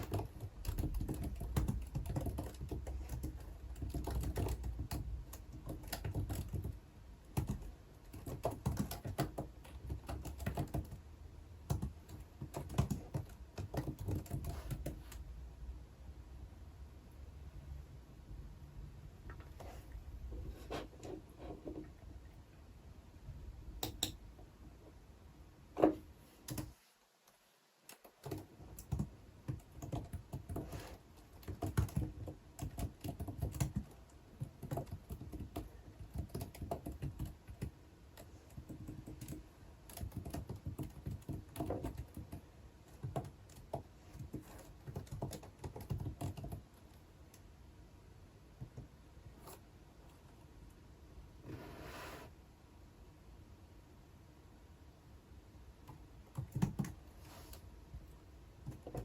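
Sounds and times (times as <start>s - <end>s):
typing on a computer keyboard: 0.0s - 15.2s, 23.8s - 24.2s, 26.4s - 26.8s, 27.9s - 47.4s, 55.8s - 57.1s, 58.6s - 59.0s.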